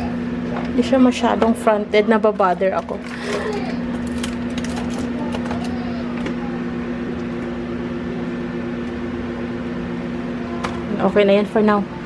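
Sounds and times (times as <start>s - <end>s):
kitchen appliance humming: 0.0s - 12.0s.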